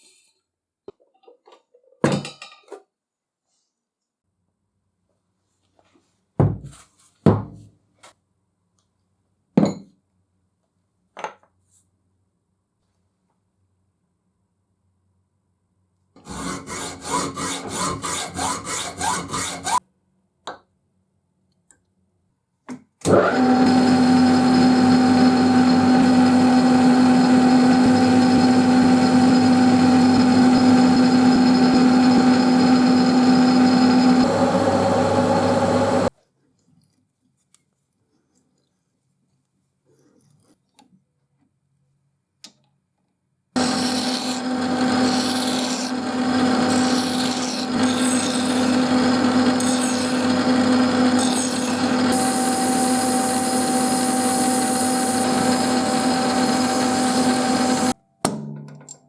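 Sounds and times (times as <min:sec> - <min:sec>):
hand tool strokes: 0:16.2 - 0:19.8, 0:43.6 - 0:58.0
electric power tool humming: 0:23.1 - 0:36.1, 0:43.6 - 0:58.0.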